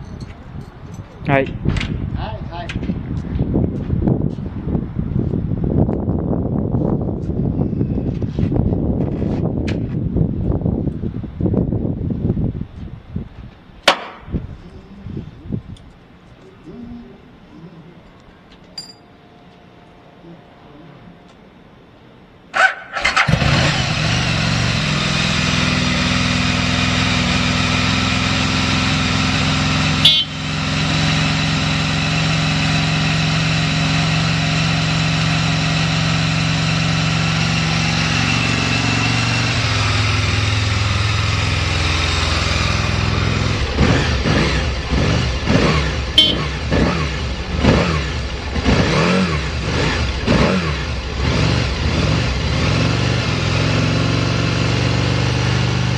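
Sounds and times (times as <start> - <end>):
motorcycle engine starting and idling: 22.5 - 55.9
engine revving: 23.0 - 55.9.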